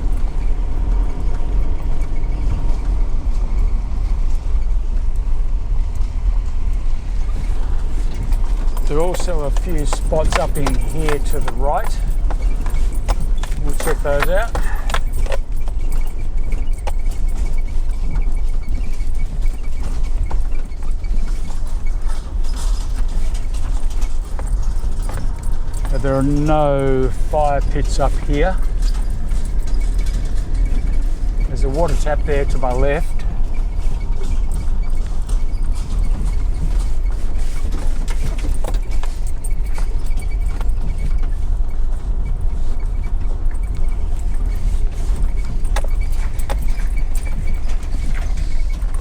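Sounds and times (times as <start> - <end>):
vehicle rumble from inside: 0.0 - 49.0
small clicks and rattles: 7.3 - 49.0.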